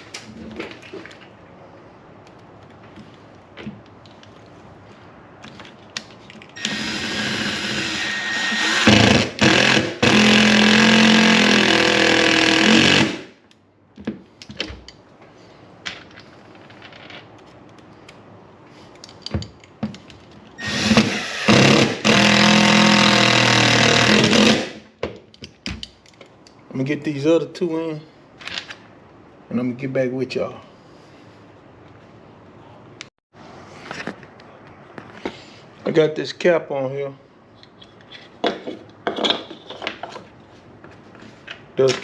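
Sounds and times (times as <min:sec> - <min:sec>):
power drill driving screws: 0:06.6 - 0:13.2, 0:20.6 - 0:24.8.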